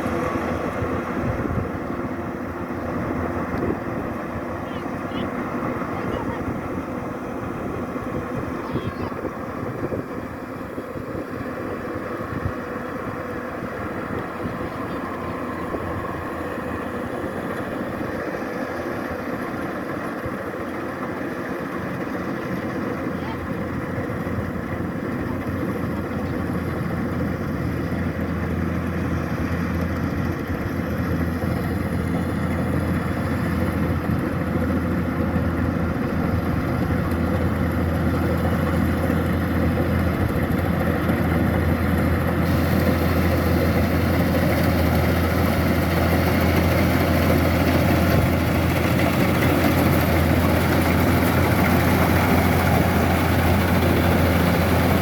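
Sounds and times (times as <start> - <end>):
combine harvester engine hum: 0.0 - 55.0.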